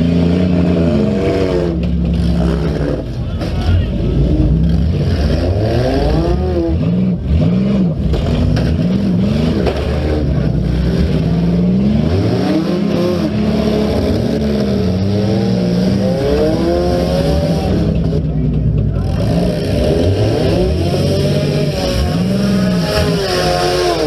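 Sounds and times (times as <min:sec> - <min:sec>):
car engines revving: 0:00.0 - 0:24.0.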